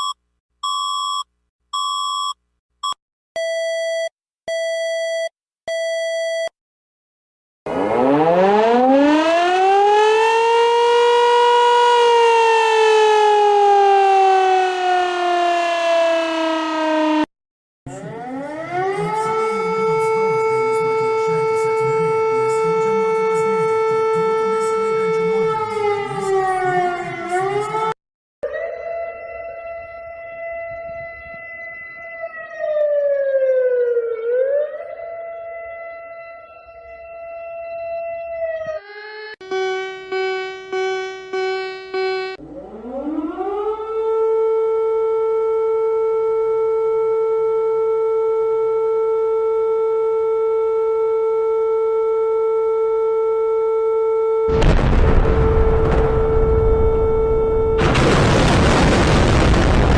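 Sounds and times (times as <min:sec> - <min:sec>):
short siren beeps: 0:00.0 - 0:06.5, 0:39.4 - 0:42.4, 0:54.4 - 0:57.9
civil defence siren: 0:07.7 - 0:17.3, 0:17.9 - 0:59.9.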